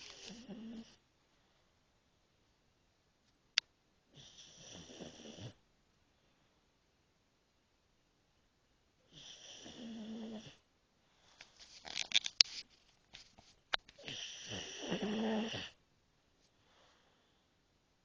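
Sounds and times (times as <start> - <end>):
dog snoring: 0.0 - 1.0, 4.1 - 5.6, 9.1 - 10.6, 14.0 - 15.8
clicks and snuffles: 11.4 - 14.2.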